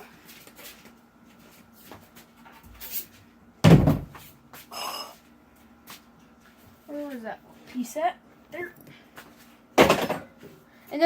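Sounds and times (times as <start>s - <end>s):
heavy thud on hard surface: 3.6s - 4.2s.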